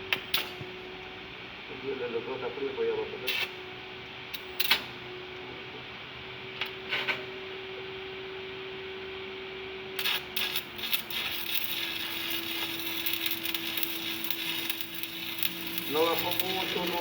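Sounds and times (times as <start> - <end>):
welding arc crackling: 0.1 - 1.2, 3.3 - 5.0, 10.0 - 17.0
machine hum: 7.3 - 17.0.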